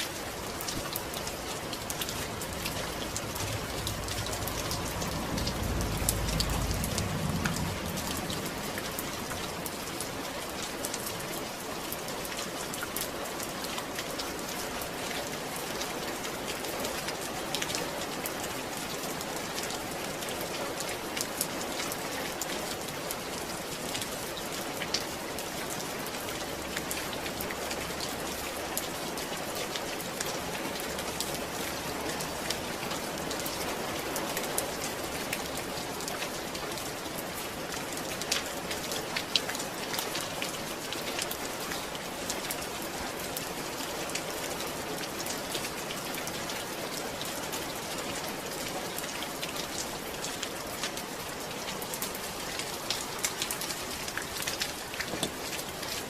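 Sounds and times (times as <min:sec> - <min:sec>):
rain falling on a surface: 0:00.0 - 0:56.0
low rumble: 0:02.3 - 0:09.4.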